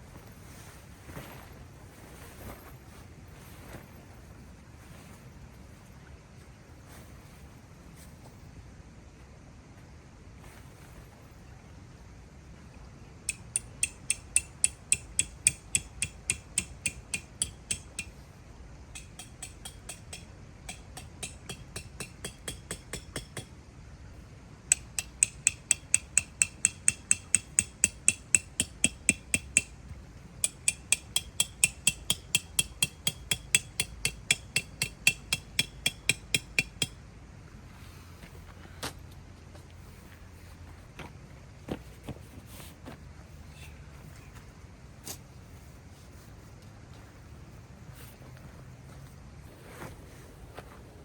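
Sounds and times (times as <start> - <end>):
hammer striking metal: 13.3 - 18.2, 18.9 - 23.5, 24.7 - 29.8, 30.4 - 37.0.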